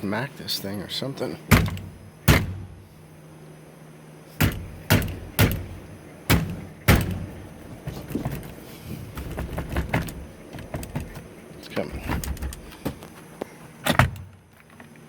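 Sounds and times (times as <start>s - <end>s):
steering wheel knocks and rattles: 4.4s - 13.0s.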